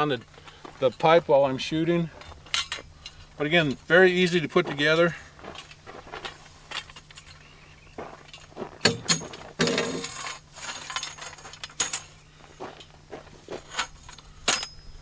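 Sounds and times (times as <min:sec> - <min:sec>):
metal pipes clinking and knocking: 0:02.2 - 0:04.4, 0:08.2 - 0:12.2, 0:13.6 - 0:15.0
metal-on-metal scrape: 0:09.2 - 0:12.1.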